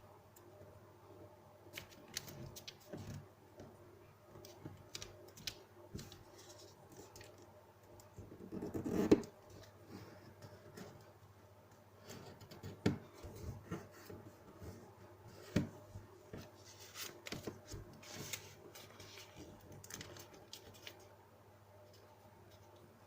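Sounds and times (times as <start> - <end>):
paper being folded: 16.4 - 21.1.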